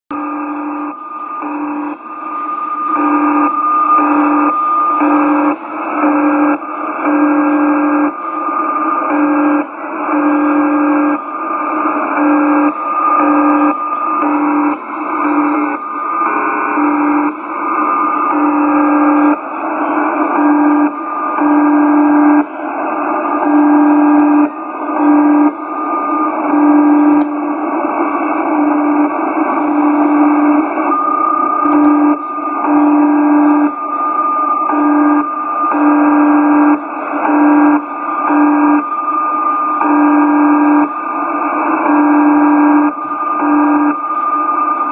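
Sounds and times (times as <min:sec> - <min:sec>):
data-mode signal tones: 0:00.1 - 0:44.9
radio band noise: 0:00.1 - 0:44.9.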